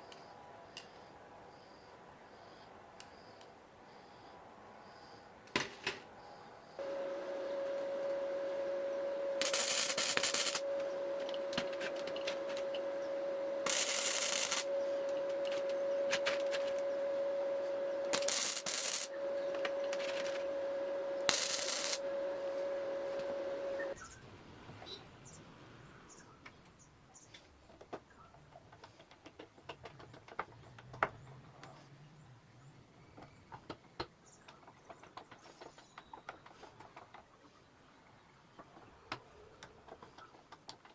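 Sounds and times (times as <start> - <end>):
power tool motor whining: 6.8 - 24.0
power tool rushing noise: 9.3 - 20.5.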